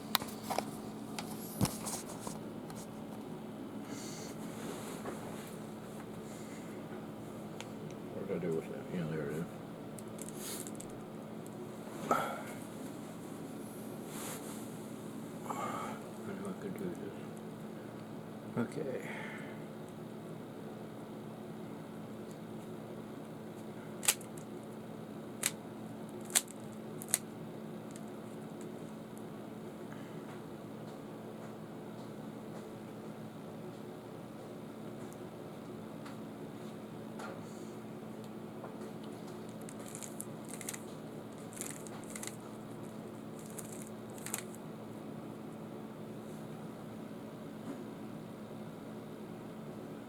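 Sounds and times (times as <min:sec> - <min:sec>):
steady low hum: 0:00.0 - 0:50.0
puzzle cube plastic clicks: 0:39.5 - 0:42.4, 0:43.4 - 0:44.6.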